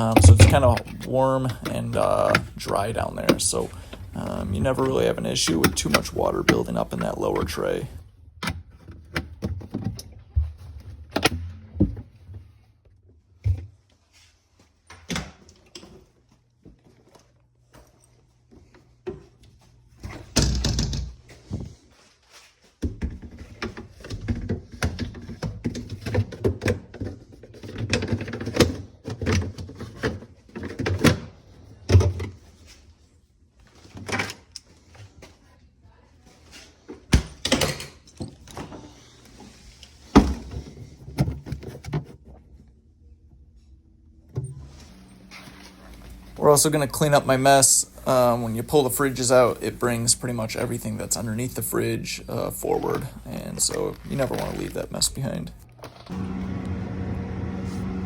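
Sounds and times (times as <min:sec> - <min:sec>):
parts knocking and clunking: 0:00.0 - 0:07.8
low steady hum: 0:00.0 - 0:08.2, 0:42.5 - 0:58.0.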